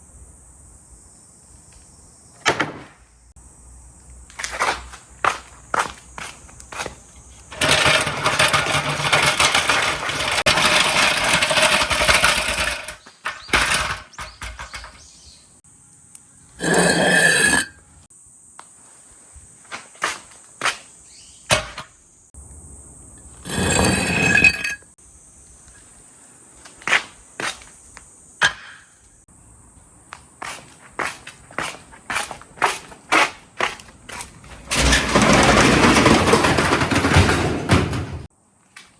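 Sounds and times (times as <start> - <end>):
marbles rolling rumble: 7.5 - 14.9, 16.6 - 17.8, 23.5 - 24.8, 34.5 - 37.4.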